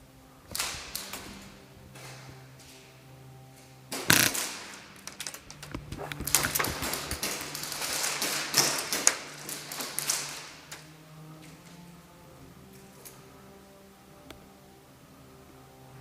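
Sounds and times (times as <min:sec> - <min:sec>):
loud hissing with crackling clicks: 0:03.9 - 0:10.9.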